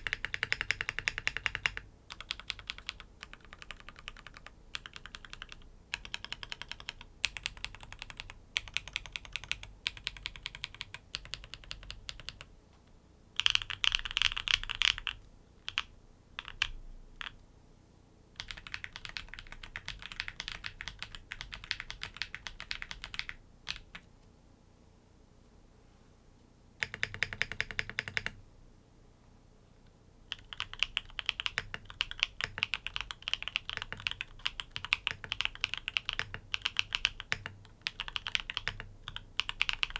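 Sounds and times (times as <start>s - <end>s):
mechanical keyboard typing: 0.0s - 12.5s, 13.4s - 17.4s, 18.4s - 24.1s, 26.8s - 28.4s, 30.3s - 39.9s.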